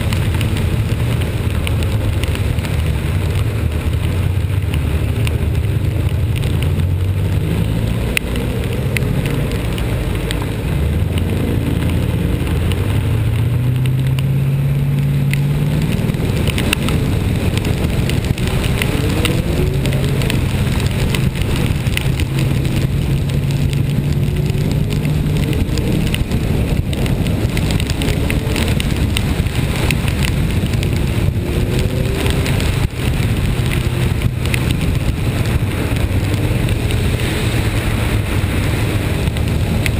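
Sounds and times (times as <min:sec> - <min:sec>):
rain ticking on vehicle: 0:00.0 - 0:39.9
vehicle engine pulling: 0:00.0 - 0:39.9
wet road and wind noise: 0:00.0 - 0:39.9.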